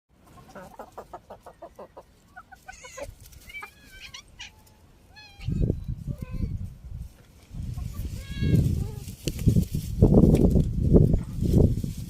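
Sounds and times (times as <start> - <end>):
hen clucking: 0.2 - 6.5, 7.6 - 9.0.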